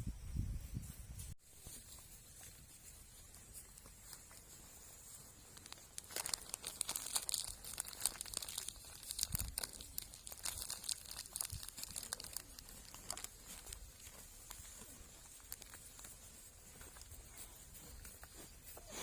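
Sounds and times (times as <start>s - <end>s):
crinkling and crackling: 1.5s - 19.0s.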